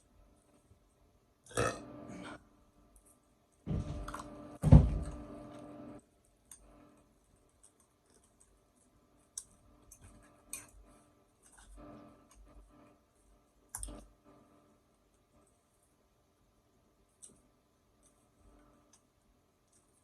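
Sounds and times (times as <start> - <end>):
loud burp: 1.5 - 2.4.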